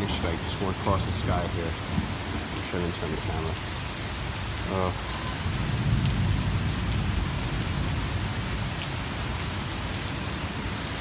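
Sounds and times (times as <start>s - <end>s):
raindrops striking close by: 0.0s - 11.0s
steady rain: 0.0s - 11.0s
low rumble of thunder: 0.1s - 2.7s, 5.4s - 10.6s.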